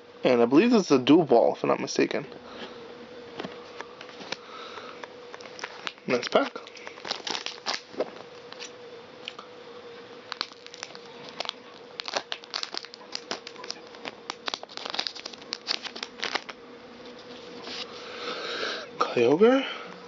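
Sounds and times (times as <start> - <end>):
faint steady hum: 0.0 - 20.0
foil pack crinkling and tearing: 5.3 - 9.4, 10.2 - 18.0.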